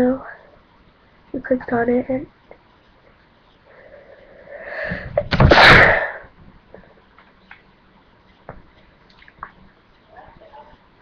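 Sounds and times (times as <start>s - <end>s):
person sneezing: 5.3s - 6.3s.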